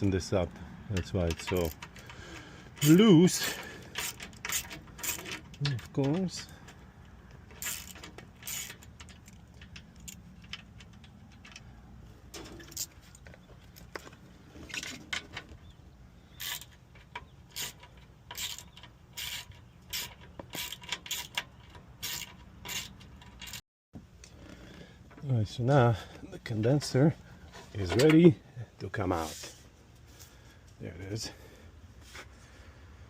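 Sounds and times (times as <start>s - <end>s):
hand tools clicking on metal: 0.9s - 11.7s, 16.4s - 23.6s.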